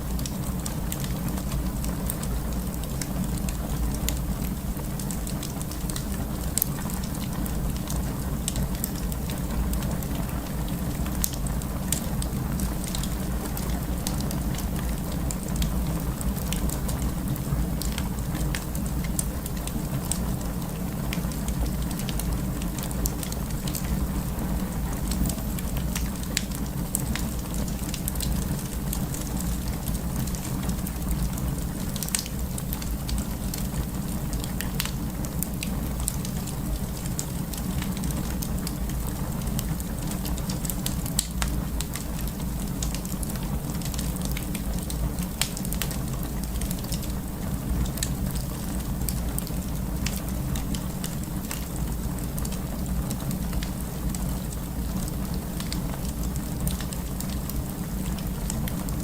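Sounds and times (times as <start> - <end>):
wood fire crackling: 0.0 - 59.0.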